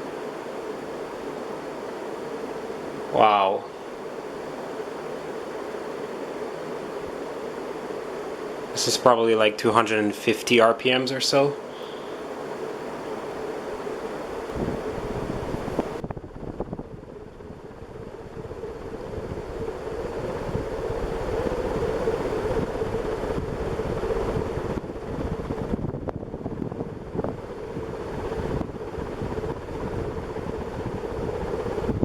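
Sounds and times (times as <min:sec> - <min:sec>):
ceiling fan hum: 0:00.0 - 0:32.0
wind noise on microphone: 0:12.2 - 0:32.0.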